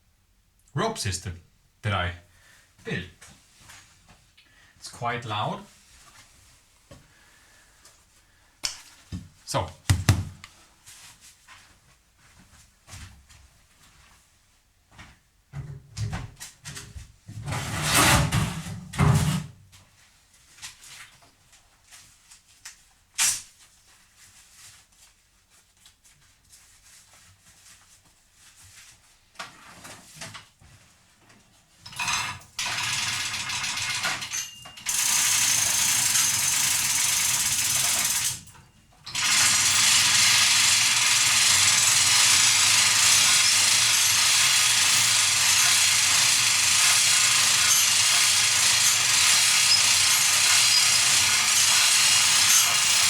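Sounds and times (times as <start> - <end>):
knocks and clicks: 9.9 - 10.4
rope hoist machine running: 31.9 - 53.0.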